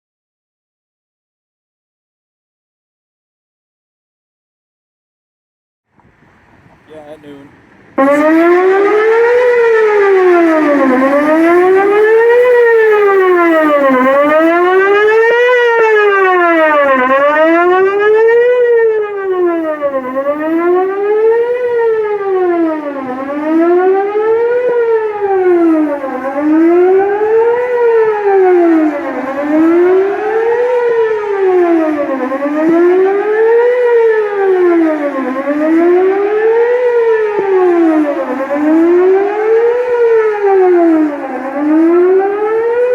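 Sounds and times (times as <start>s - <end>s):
outdoor warning siren wailing: 7.0s - 42.9s.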